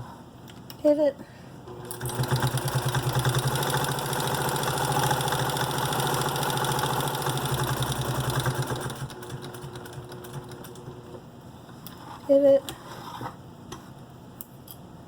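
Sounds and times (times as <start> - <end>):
electric sewing machine stitching: 1.7 - 11.2.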